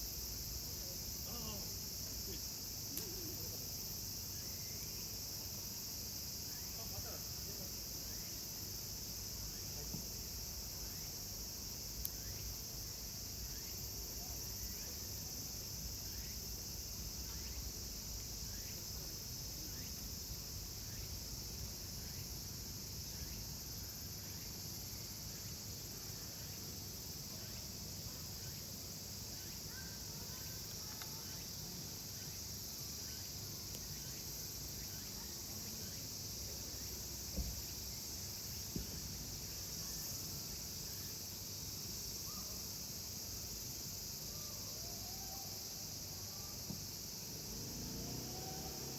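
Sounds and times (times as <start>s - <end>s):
insects shrilling: 0.1s - 5.3s, 19.4s - 36.9s.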